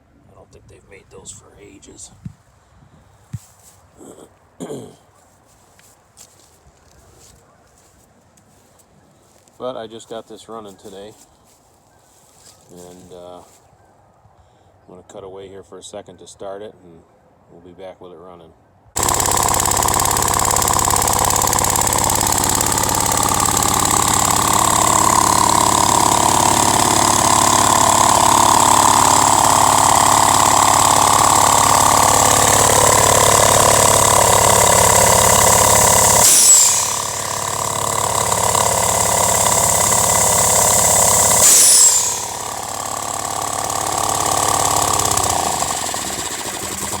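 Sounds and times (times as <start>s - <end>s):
engine running compressor: 19.0s - 47.0s
short sharp burst: 19.0s - 47.0s.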